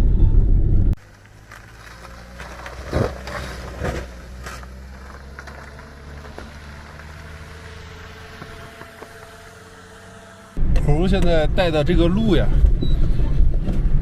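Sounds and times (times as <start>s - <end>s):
vehicle engine humming: 0.0s - 14.0s.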